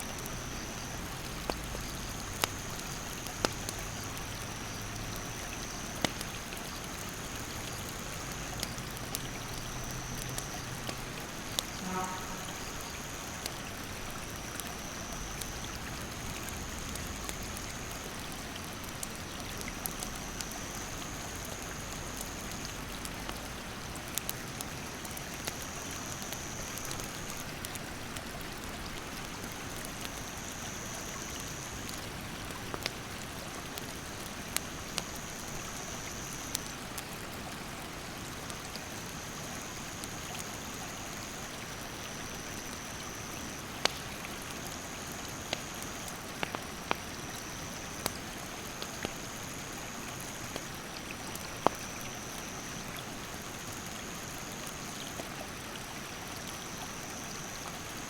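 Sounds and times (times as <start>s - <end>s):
campfire crackling: 0.0s - 58.0s
insect buzzing: 11.6s - 13.2s.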